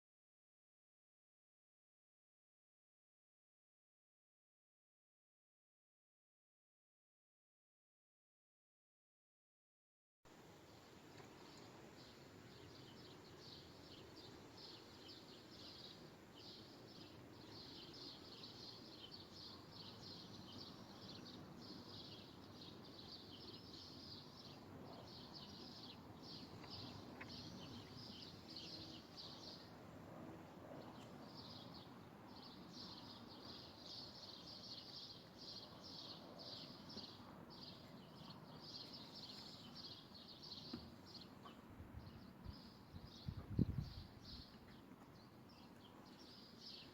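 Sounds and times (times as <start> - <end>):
soft outdoor hiss: 10.3 - 46.9.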